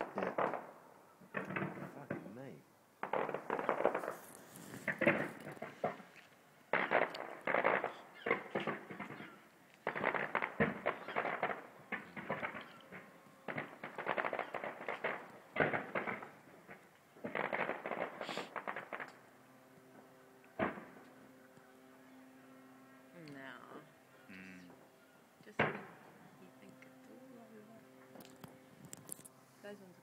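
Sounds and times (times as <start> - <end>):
distant fireworks bangs and crackles: 0.0 - 21.7, 25.4 - 29.8.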